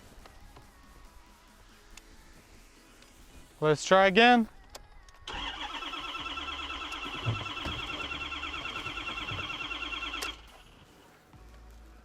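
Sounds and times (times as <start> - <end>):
starter cranking engine: 5.3 - 9.7.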